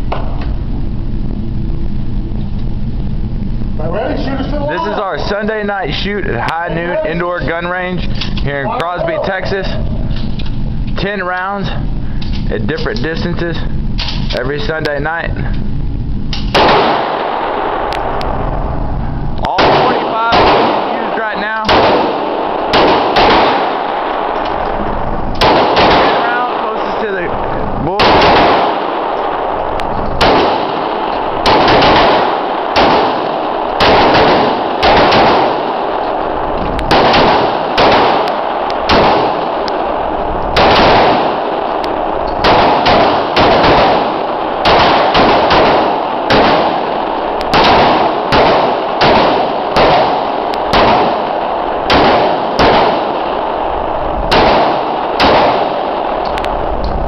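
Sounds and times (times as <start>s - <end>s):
pistol shots echoing indoors: 16.3s - 18.2s, 19.5s - 27.0s, 28.0s - 56.4s.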